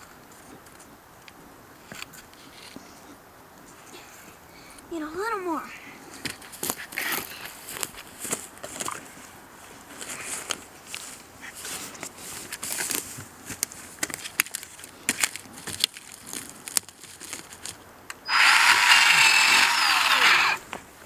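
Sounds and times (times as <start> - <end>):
light clicks and crackles: 9.9 - 18.2
chainsaw cutting wood: 18.3 - 20.8.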